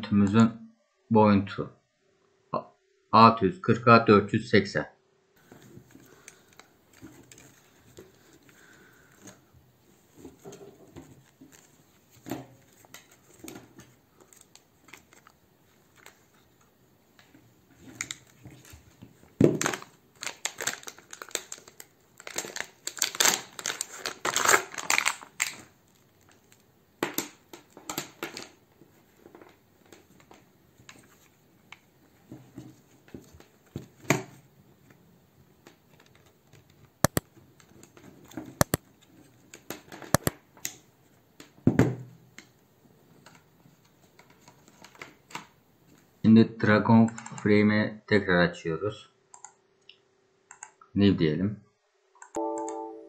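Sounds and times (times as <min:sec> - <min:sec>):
rustling and crinkling: 0:05.4 - 0:46.2.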